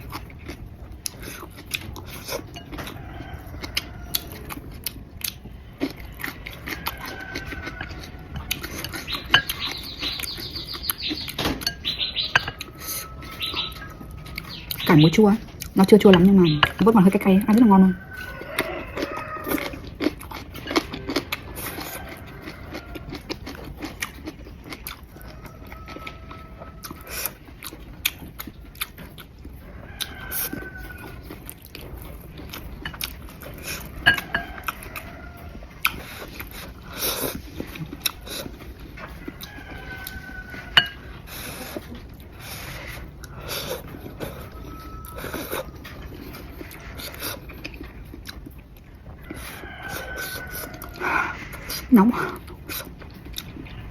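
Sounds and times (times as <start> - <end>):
chewing: 0.0 - 53.9
chopsticks tapping a bowl: 9.3 - 9.8.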